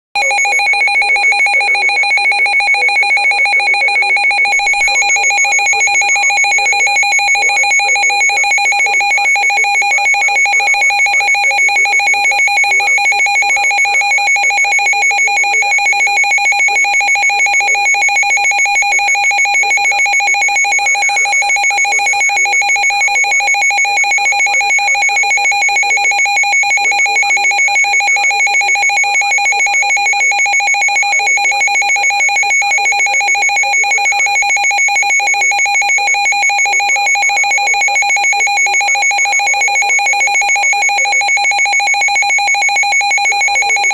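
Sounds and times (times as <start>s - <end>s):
fluttering emergency alert tone: 0.2s - 23.1s.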